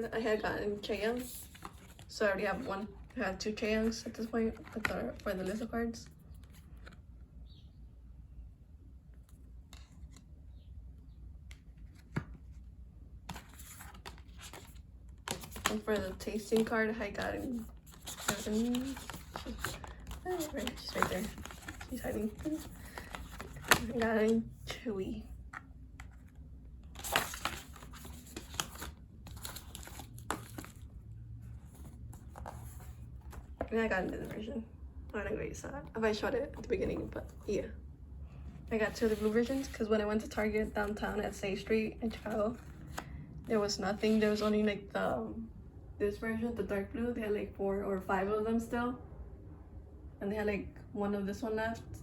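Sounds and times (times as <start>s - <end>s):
cards and paper rustling: 0.2s - 7.1s, 11.5s - 12.7s, 13.3s - 34.5s, 38.6s - 43.2s
plastic packaging crinkling: 13.5s - 24.4s, 26.9s - 30.9s.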